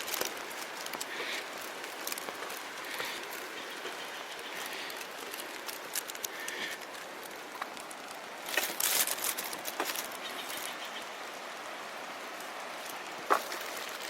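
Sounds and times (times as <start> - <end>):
soft footsteps on wooden ties: 0.0 - 10.8
faint ticks: 0.0 - 11.1
light rain hissing: 0.0 - 14.0.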